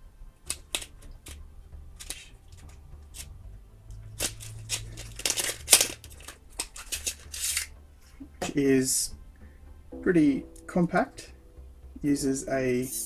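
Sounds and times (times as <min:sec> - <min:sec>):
packaging rustling and clicking: 0:00.5 - 0:01.4, 0:02.0 - 0:03.3, 0:04.1 - 0:07.7
packaging crinkling: 0:02.0 - 0:03.3, 0:04.2 - 0:07.7.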